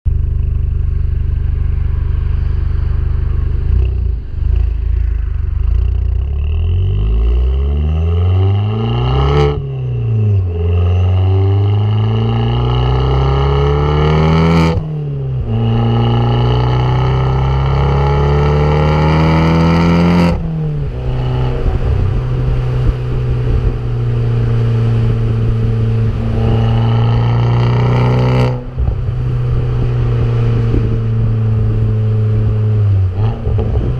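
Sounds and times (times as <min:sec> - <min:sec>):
car engine accelerating hard: 0:00.1 - 0:33.9.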